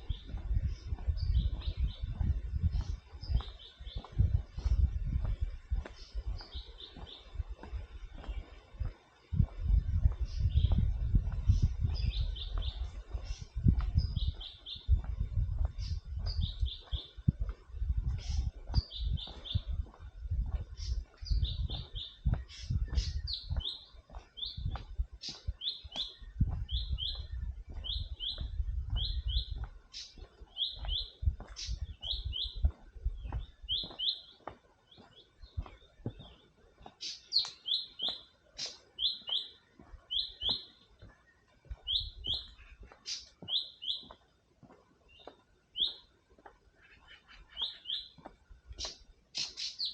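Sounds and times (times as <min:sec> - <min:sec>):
bird calling: 0:37.0 - 0:41.0, 0:46.7 - 0:48.2, 0:48.8 - 0:49.9.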